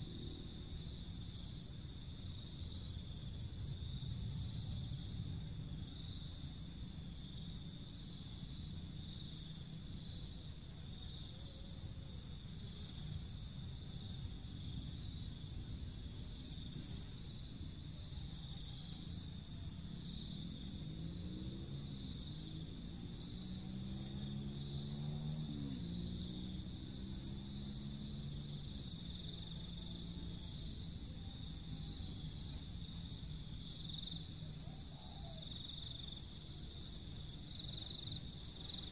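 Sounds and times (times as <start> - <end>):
low background rumble: 0.0 - 11.3
insects droning: 0.0 - 38.9.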